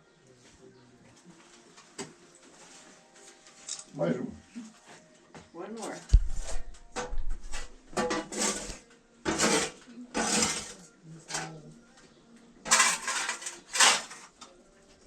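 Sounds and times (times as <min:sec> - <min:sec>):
tools scraping in oven: 0:06.4 - 0:11.6, 0:12.6 - 0:14.4.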